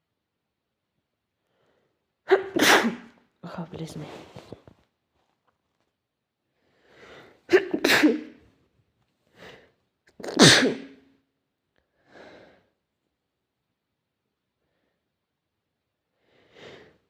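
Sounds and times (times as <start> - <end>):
person sneezing: 2.3 - 3.2, 7.5 - 8.4, 10.1 - 11.0.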